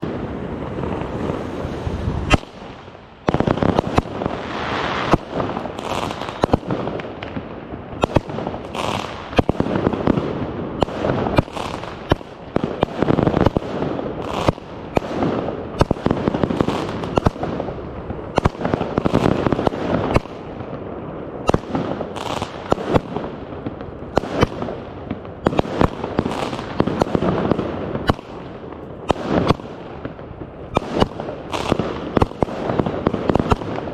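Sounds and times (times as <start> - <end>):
continuous rush of noise: 0.0 - 3.3
fireworks bangs: 0.0 - 33.9.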